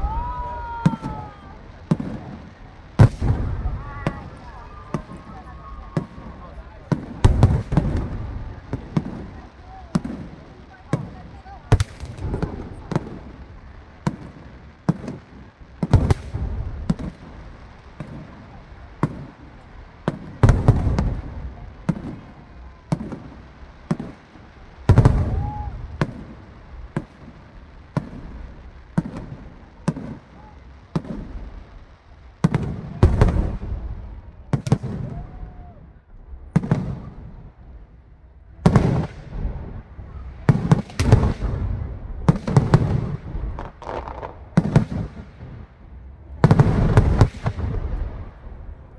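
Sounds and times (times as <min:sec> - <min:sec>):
fireworks cracking and booming: 0:00.0 - 0:48.9.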